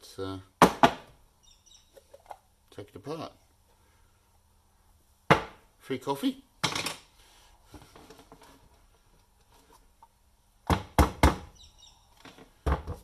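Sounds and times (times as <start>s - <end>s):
coffee grinder knocks and clunks: 12.6s - 13.0s.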